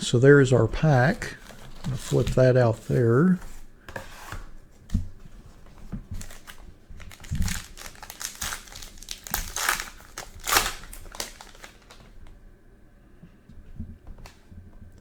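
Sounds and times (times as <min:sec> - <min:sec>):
plastic wrapper crinkling and tearing: 0:00.8 - 0:03.0, 0:06.1 - 0:12.3.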